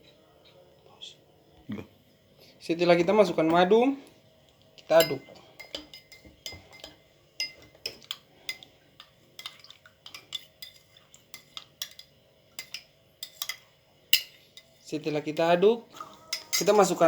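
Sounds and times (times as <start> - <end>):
spoon clinking against glass: 5.0 - 8.6, 9.4 - 14.7, 16.3 - 16.8.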